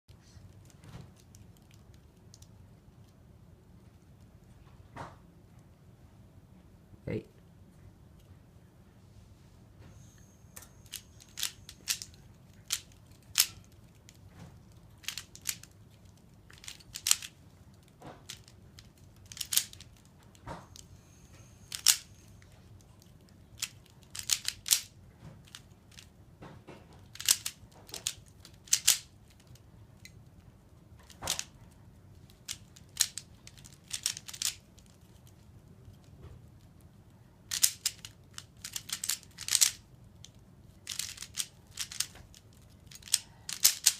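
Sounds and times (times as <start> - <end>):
puzzle cube clicking: 10.8 - 14.2, 14.9 - 20.1, 21.7 - 22.1, 23.6 - 26.1, 27.0 - 30.2, 32.3 - 35.3, 37.5 - 39.9, 40.8 - 43.9.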